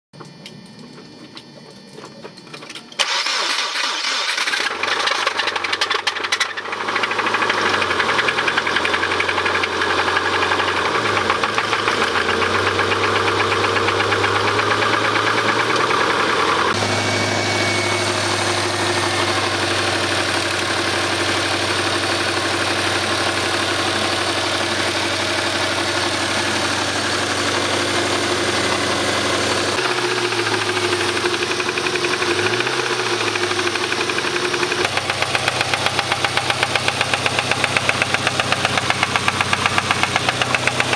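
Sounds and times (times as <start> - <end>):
car engine knocking: 5.6 - 16.7, 27.2 - 40.9.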